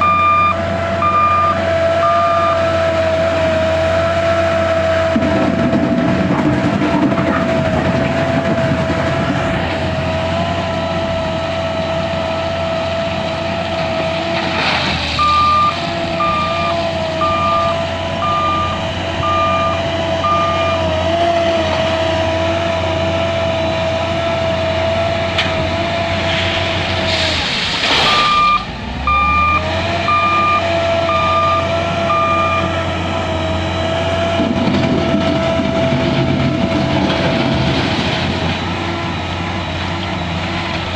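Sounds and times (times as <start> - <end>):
reversing alarm beeps: 0.0 - 2.8, 15.2 - 20.8, 28.1 - 32.8
diesel engine whining: 0.0 - 40.9
short burst of noise: 27.0 - 28.7.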